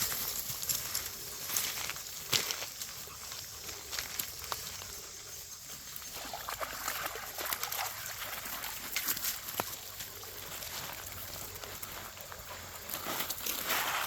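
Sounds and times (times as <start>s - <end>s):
creek water trickling: 0.1s - 14.0s.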